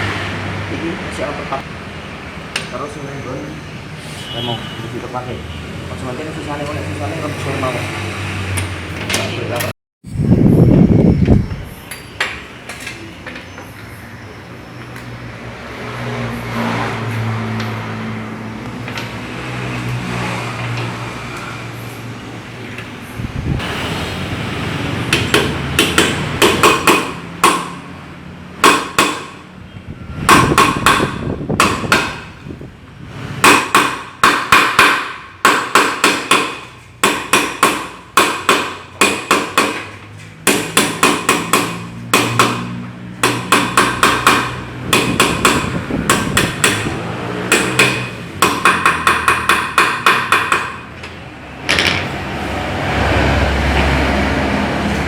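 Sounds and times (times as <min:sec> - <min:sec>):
hammer blows on metal: 0:30.2 - 0:32.4.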